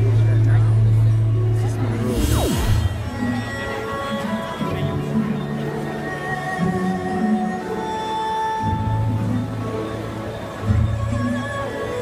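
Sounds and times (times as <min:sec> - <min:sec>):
electronic downward sweep: 0:01.8 - 0:03.7.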